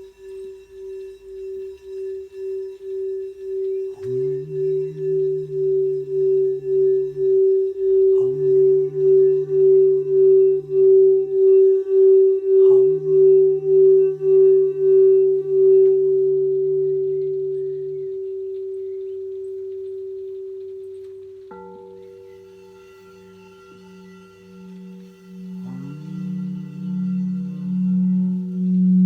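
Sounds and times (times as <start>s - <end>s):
singing bowl ringing: 0.0s - 29.0s
person humming low notes: 3.1s - 20.8s, 23.8s - 29.0s.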